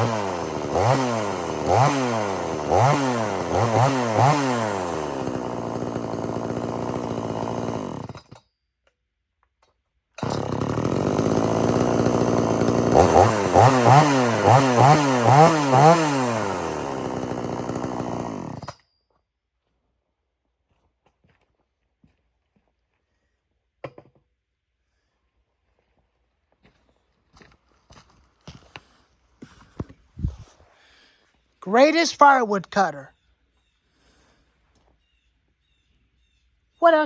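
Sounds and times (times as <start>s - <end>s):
chainsaw revving and idling: 0.0s - 8.4s, 10.2s - 18.8s.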